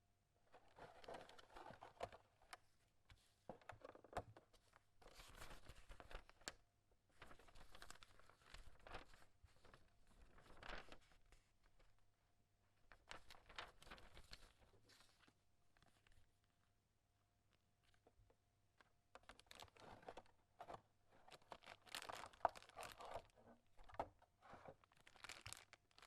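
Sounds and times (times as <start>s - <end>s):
packaging crinkling and rustling: 7.2s - 11.2s, 13.1s - 16.2s, 18.8s - 26.0s.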